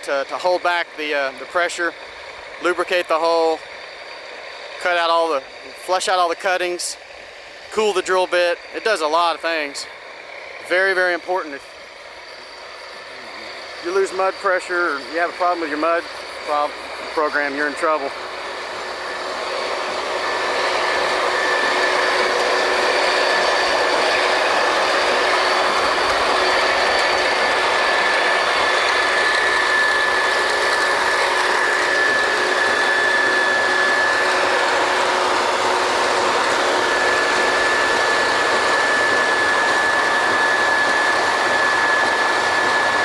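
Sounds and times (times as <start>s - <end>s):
drilling rig rushing noise: 0.0s - 43.0s
high machine whine: 0.0s - 43.0s.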